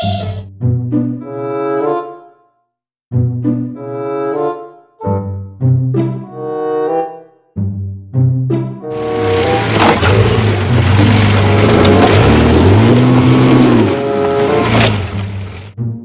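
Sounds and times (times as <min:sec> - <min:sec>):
background music: 0:00.0 - 0:16.0
loud engine-like noise: 0:08.9 - 0:15.7.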